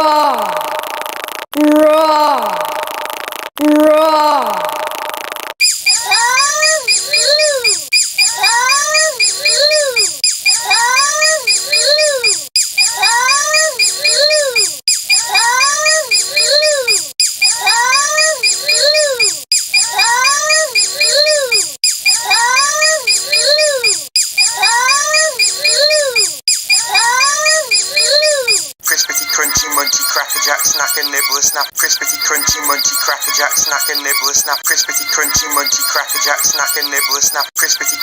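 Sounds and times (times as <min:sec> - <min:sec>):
animal-like call sound effect: 0:22.2 - 0:38.0.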